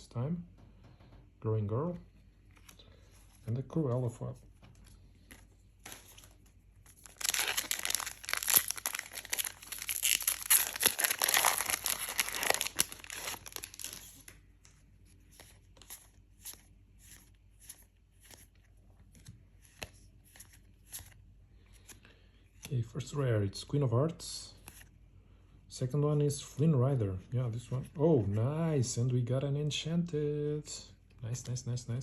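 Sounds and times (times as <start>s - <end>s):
foil wrapper tearing and crinkling: 7.0s - 14.2s.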